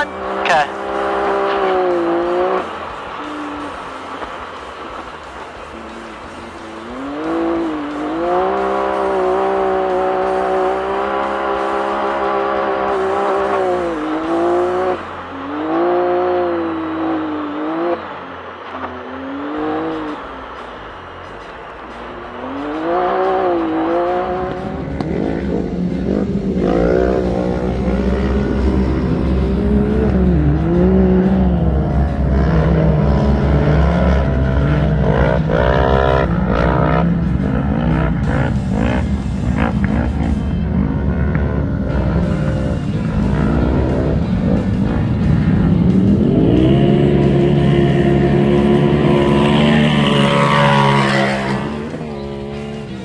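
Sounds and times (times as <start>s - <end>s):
race car engine revving: 0.0s - 53.0s
heavy low rumble: 24.4s - 50.0s.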